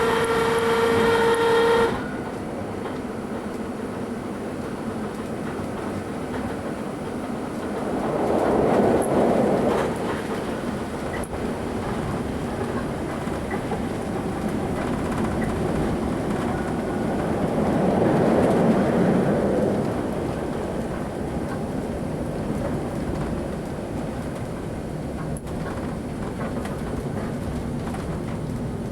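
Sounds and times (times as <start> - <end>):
traction motor whine: 0.0 - 2.2
electric train running on board: 0.0 - 28.9.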